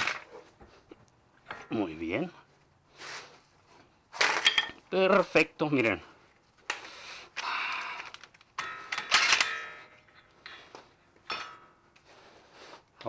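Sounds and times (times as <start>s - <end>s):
metal parts rustling and clattering: 0.0s - 0.7s, 1.4s - 1.8s, 4.1s - 5.9s, 6.5s - 12.0s
ringing metallic clank: 8.6s - 10.6s.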